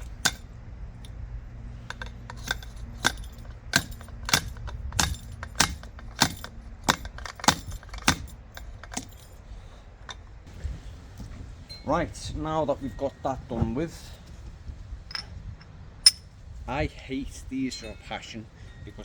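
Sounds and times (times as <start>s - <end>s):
hammer clanking on metal: 0.0s - 0.5s, 1.9s - 9.3s.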